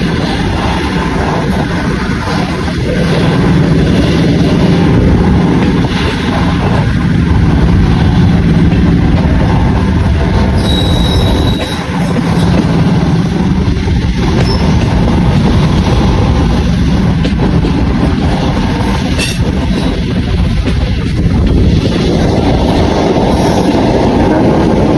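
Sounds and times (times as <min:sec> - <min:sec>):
train wheels rumbling on rail: 0:00.0 - 0:24.9
high wheel squeal: 0:10.5 - 0:11.9.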